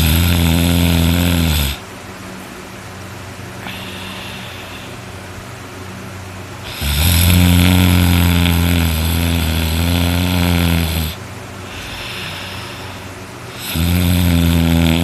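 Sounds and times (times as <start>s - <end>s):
person snoring: 0.0s - 1.8s, 3.6s - 5.0s, 6.6s - 15.0s.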